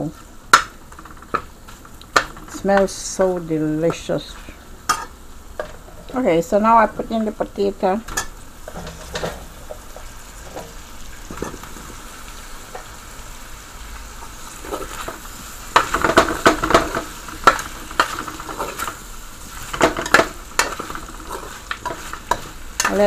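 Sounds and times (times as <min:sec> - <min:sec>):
food sizzling in oil: 0:00.0 - 0:23.0
spoon scraping a pot: 0:19.6 - 0:23.0.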